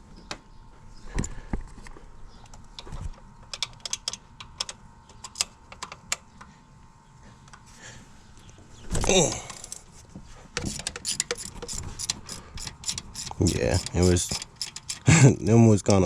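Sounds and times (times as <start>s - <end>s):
ratchet clicking: 10.6s - 15.1s.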